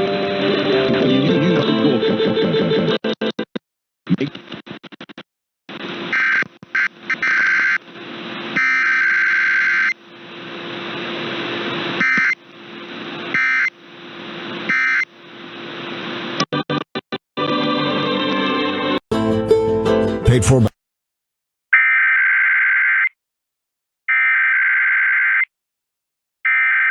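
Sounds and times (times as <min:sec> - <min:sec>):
harsh buzzing digital data tones: 0:06.1 - 0:07.8, 0:08.6 - 0:10.0, 0:13.3 - 0:13.8, 0:14.7 - 0:15.1.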